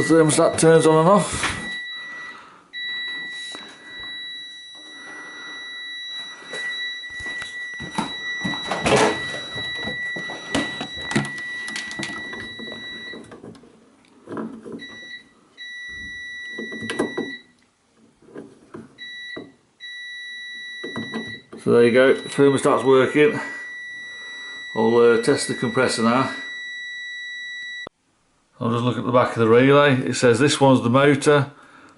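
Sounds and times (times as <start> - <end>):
continuity tester beeping: 1.6 - 13.4, 14.7 - 17.6, 19.0 - 27.9.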